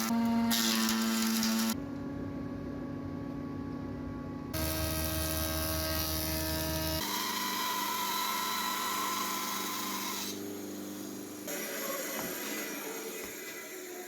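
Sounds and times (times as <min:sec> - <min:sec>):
power tool motor whine: 0:04.6 - 0:13.5.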